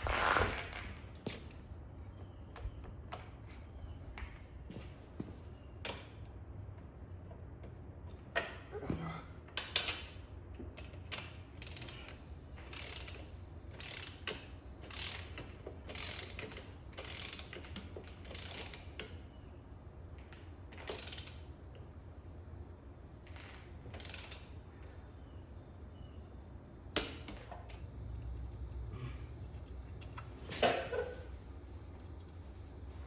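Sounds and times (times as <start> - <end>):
ratchet wrench clicking: 11.1 - 19.2, 20.8 - 21.5, 23.9 - 24.6.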